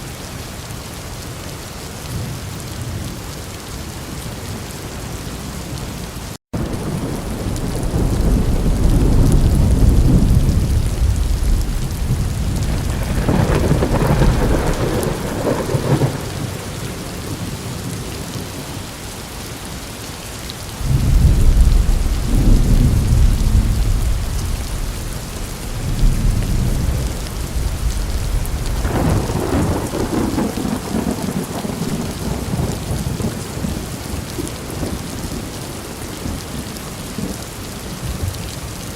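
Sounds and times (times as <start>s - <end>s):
heavy rain: 0.0s - 38.9s
thunder clap: 6.6s - 17.4s, 20.8s - 33.4s
thunder rolling: 6.6s - 17.6s, 20.8s - 33.4s.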